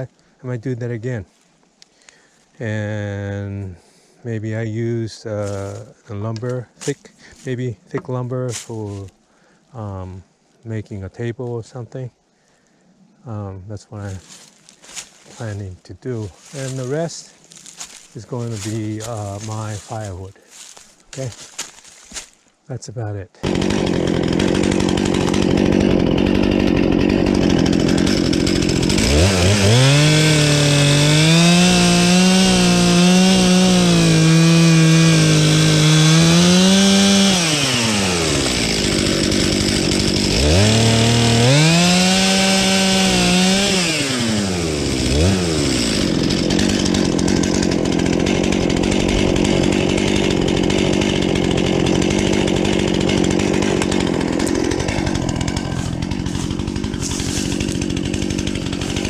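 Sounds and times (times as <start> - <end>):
chainsaw idling and revving: 5.4 - 7.0, 8.5 - 9.1, 14.0 - 22.4, 23.4 - 59.0.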